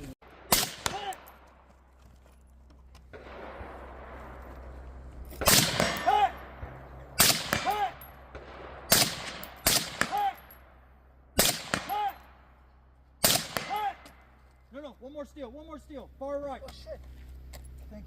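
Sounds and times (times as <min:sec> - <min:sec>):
suppressed rifle shots: 0:00.2 - 0:01.3, 0:05.4 - 0:10.4, 0:11.4 - 0:12.1, 0:13.2 - 0:14.2.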